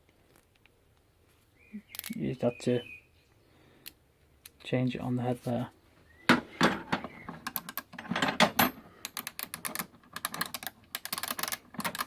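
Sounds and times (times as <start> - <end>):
ratchet clicking: 9.0 - 12.0.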